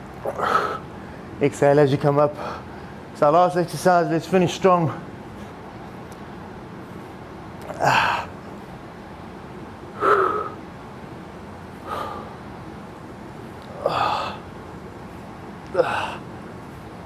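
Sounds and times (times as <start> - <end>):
man exhaling with effort: 10.0 - 10.6, 11.8 - 12.4, 13.7 - 14.4, 15.7 - 16.3.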